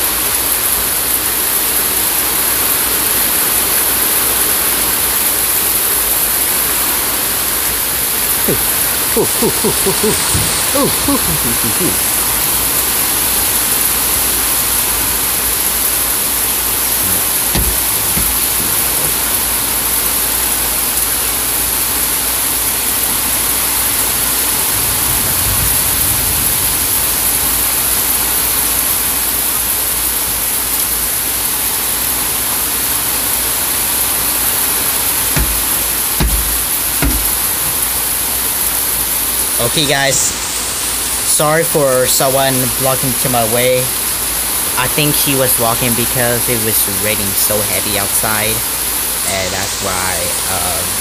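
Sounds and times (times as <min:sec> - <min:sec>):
heavy rain pouring: 0:00.0 - 0:51.0
low thumps: 0:08.4 - 0:12.4, 0:17.0 - 0:19.5, 0:35.4 - 0:37.8.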